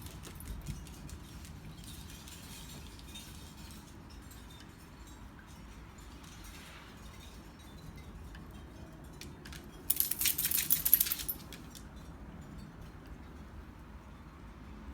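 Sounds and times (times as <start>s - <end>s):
small metal pieces jangling: 9.5s - 11.8s.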